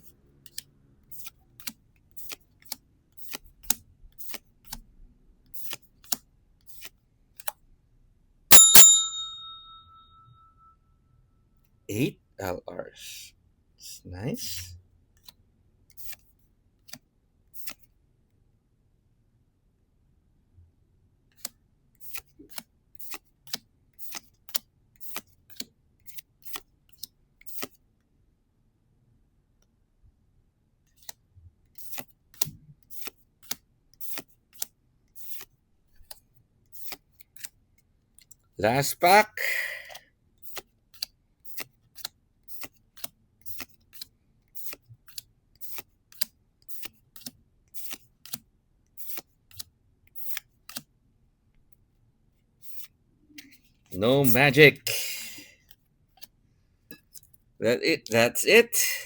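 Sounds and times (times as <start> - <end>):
bell dinging: 8.5 - 10.5
cards being flicked through: 40.4 - 48.4, 49.0 - 50.9.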